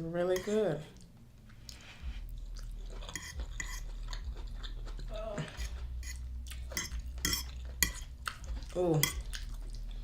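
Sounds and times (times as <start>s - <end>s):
chewing: 0.4s - 10.0s
cutlery clicking on a plate: 6.7s - 8.0s.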